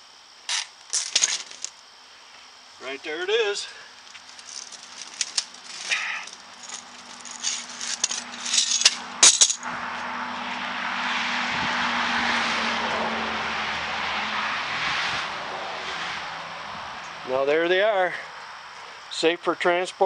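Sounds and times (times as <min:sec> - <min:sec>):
metal blades rattling: 0:04.3 - 0:09.6
passing road vehicles rushing: 0:06.4 - 0:17.5.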